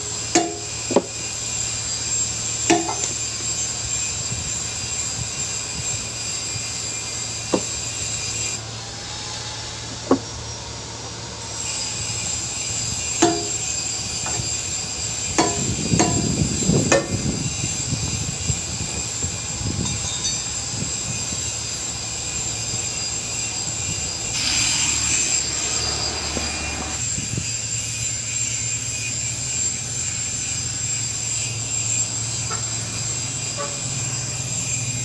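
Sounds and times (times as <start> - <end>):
steady machine drone: 0.0 - 35.0
hammer blows on metal: 12.1 - 21.3.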